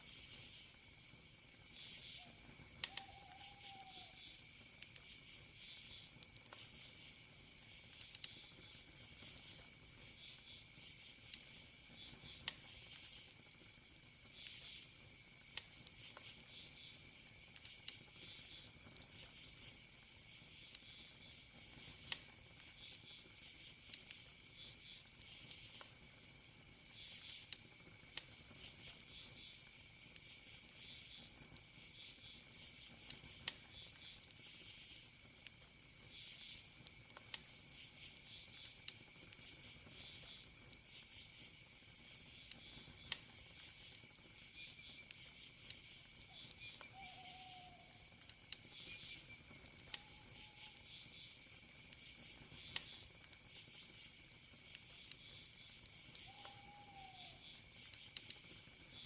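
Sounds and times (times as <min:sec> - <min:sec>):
campfire crackling and popping: 0:00.0 - 0:59.0
crickets chirping: 0:00.0 - 0:59.0
steady high insect tone: 0:00.0 - 0:59.0.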